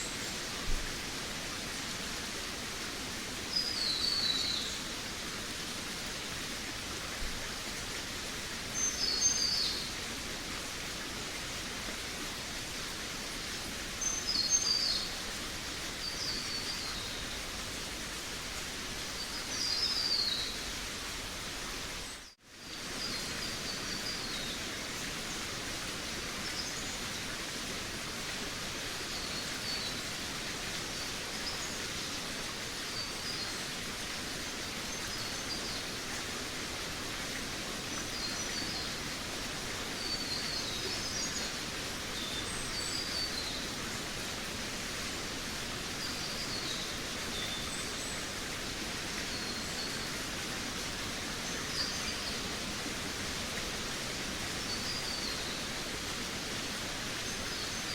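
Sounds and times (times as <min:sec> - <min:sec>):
steady background hiss: 0:00.0 - 0:57.9.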